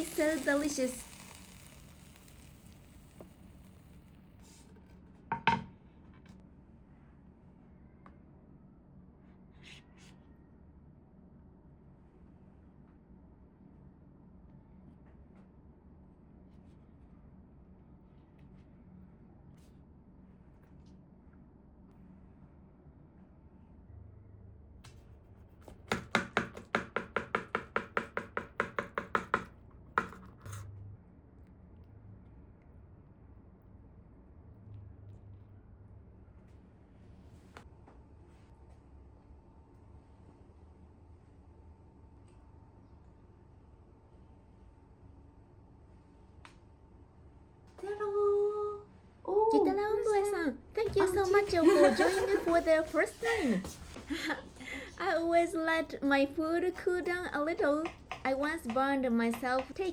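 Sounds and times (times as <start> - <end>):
dishes knocking: 5.3 - 5.7.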